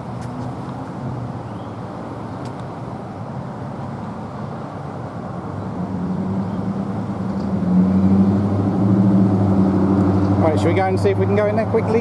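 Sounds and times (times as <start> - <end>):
road noise: 0.0 - 12.0
car engine drone: 5.4 - 12.0.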